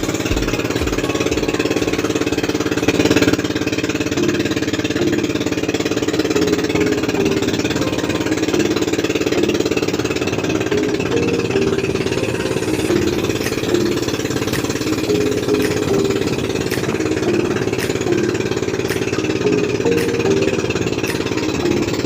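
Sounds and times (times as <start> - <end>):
small engine running: 0.0 - 22.0.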